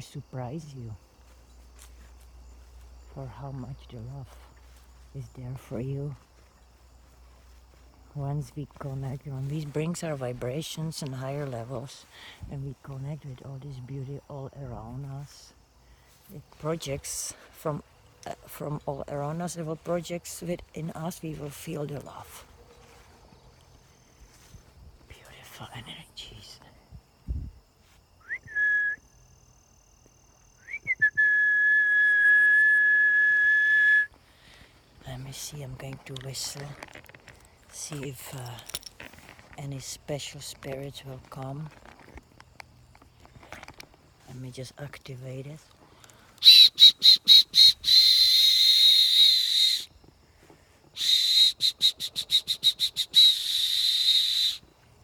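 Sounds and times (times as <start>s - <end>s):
person whistling: 28.2s - 29.0s, 30.6s - 34.1s, 46.4s - 49.9s, 51.0s - 54.6s.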